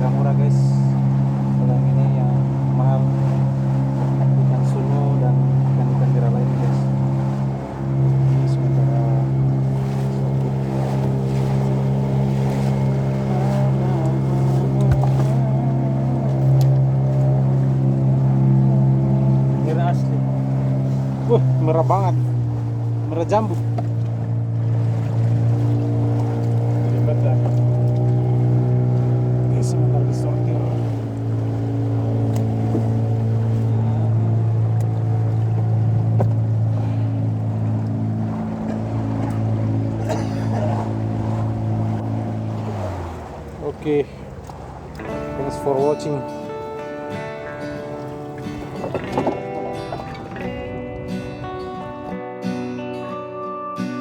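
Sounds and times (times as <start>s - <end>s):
boat engine running: 0.0s - 54.0s
faint knocks: 14.8s - 15.4s, 48.2s - 50.5s.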